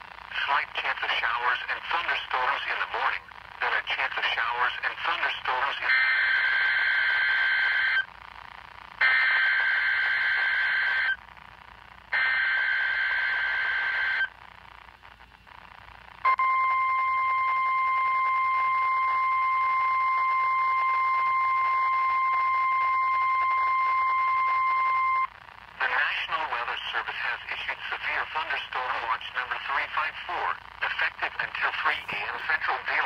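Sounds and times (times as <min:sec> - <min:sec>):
steady alarm tone: 0:16.3 - 0:25.3.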